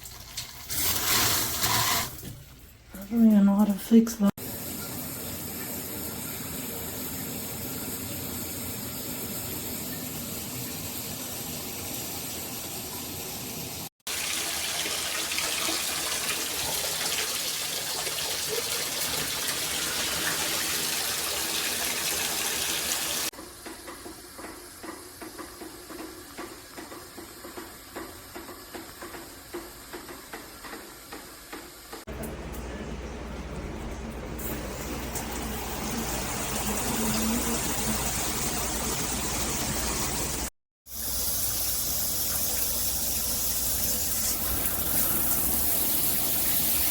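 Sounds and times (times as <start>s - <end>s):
shower head spraying water: 34.4s - 46.9s.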